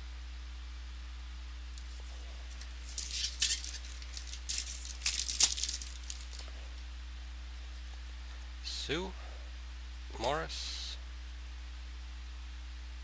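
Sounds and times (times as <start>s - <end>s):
steady electrical hum: 0.0s - 13.0s
card packaging crinkling and clicking: 1.8s - 6.6s.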